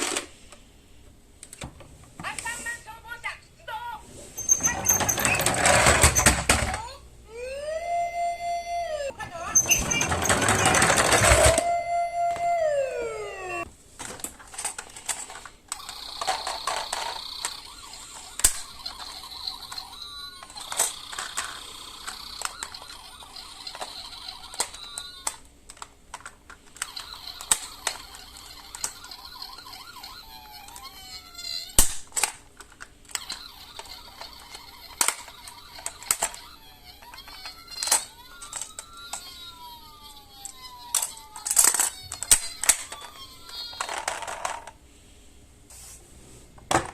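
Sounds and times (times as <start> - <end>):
toy cars clicking and knocking: 4.4 - 6.9, 9.6 - 11.7, 14.0 - 44.8
siren wails: 7.3 - 13.7, 15.8 - 25.4, 26.8 - 31.5, 33.2 - 44.0.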